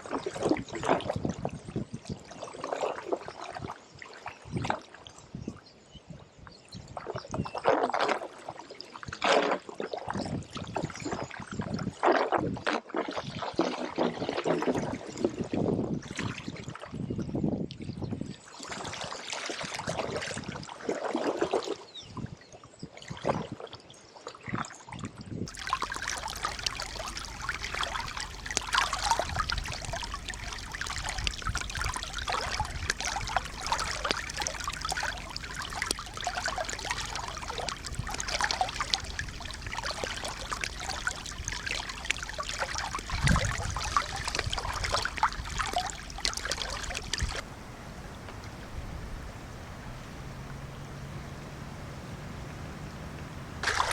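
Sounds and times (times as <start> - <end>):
floodwater gurgling and splashing: 25.5 - 53.9.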